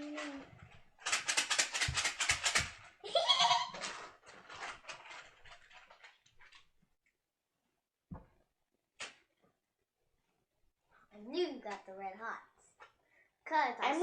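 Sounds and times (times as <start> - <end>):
children giggling: 3.0 - 3.8
high squealing laugh: 3.0 - 3.8.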